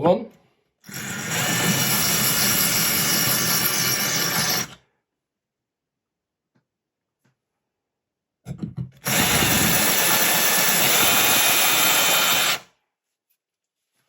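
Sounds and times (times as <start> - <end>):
power drill grinding into tile: 0.8 - 4.8, 9.0 - 12.7.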